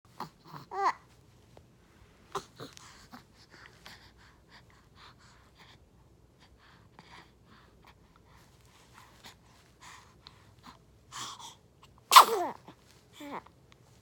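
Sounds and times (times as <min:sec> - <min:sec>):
faint breathing: 0:02.0 - 0:11.7
person sneezing: 0:12.1 - 0:12.6.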